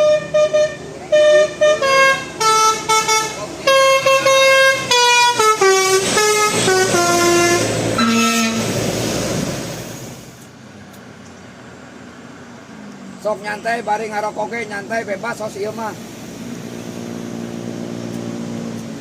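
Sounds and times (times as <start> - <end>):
bus multi-tone horn melody: 0.0 - 8.8
rushing noise: 0.0 - 10.4.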